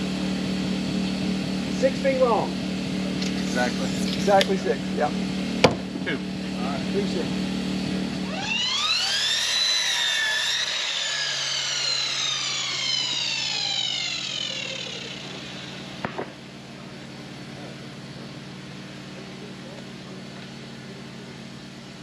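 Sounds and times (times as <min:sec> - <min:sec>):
electric power saw cutting lumber: 0:00.0 - 0:16.6
steady low hum: 0:00.0 - 0:22.0.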